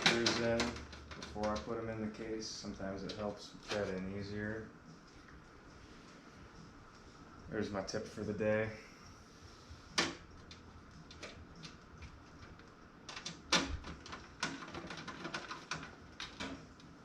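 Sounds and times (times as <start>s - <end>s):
plastic fans and screws clicking: 0.0s - 4.2s, 9.9s - 17.0s.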